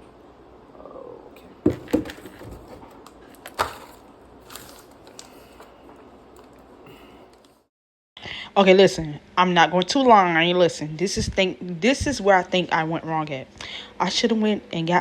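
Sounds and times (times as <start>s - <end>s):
objects knocking and clicking: 1.6s - 5.7s.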